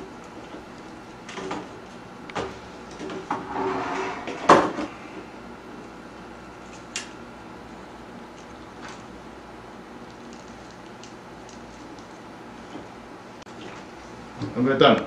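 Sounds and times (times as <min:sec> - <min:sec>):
motorized curtain sliding: 0:03.3 - 0:04.6.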